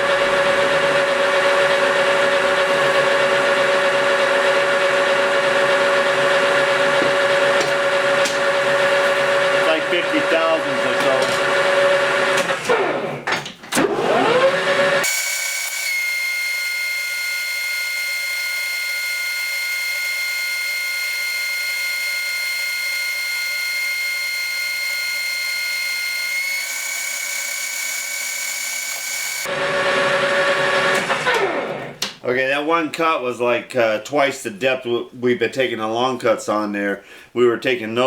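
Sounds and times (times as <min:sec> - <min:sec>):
metal lathe cutting whine: 0:14.2 - 0:29.7.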